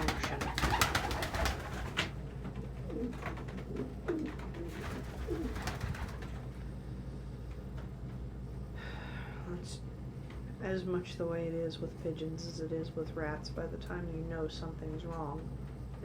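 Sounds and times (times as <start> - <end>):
pigeons cooing: 0.0 - 6.4
steady low hum: 0.0 - 16.0.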